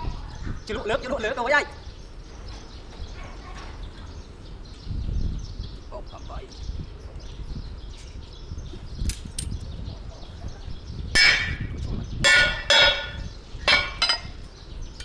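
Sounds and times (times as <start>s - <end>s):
metal clanging on metal: 11.2s - 14.5s.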